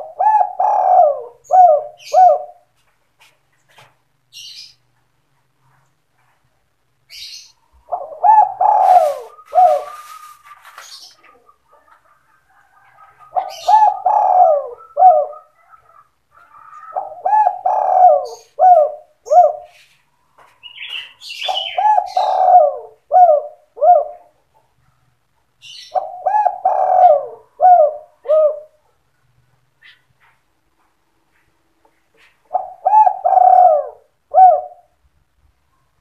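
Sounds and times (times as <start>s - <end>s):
dove cooing: 0.0s - 2.7s, 7.1s - 19.8s, 20.7s - 24.4s, 25.7s - 28.9s, 32.2s - 35.0s.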